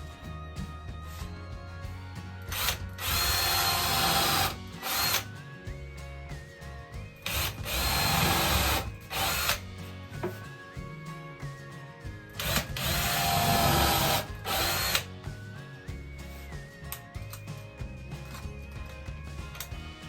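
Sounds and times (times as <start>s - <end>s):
power drill driving screws: 2.5s - 5.3s, 7.3s - 9.6s, 12.4s - 15.1s.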